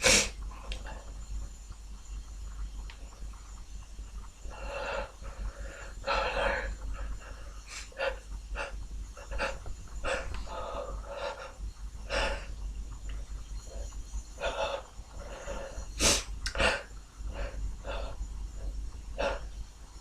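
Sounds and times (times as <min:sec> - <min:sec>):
man sniffling: 0:00.0 - 0:00.4, 0:07.7 - 0:11.4, 0:14.4 - 0:18.2.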